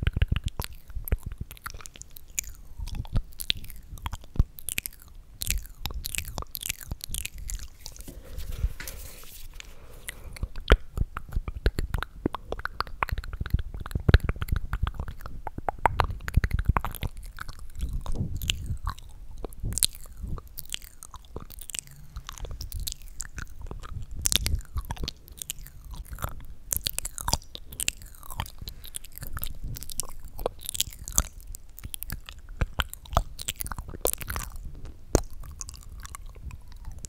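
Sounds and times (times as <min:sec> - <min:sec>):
mouth clicks and smacks: 0:00.0 - 0:37.0.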